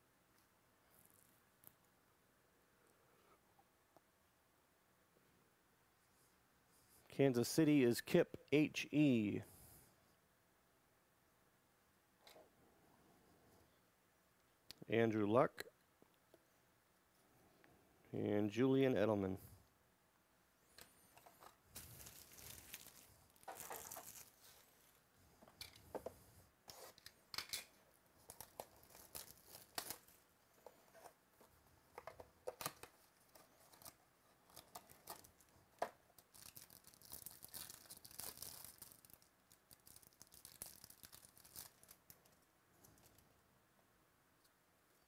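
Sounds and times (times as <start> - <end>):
wrappers tearing and crinkling: 21.7 - 24.8, 28.2 - 30.2, 33.7 - 35.5, 36.2 - 42.3.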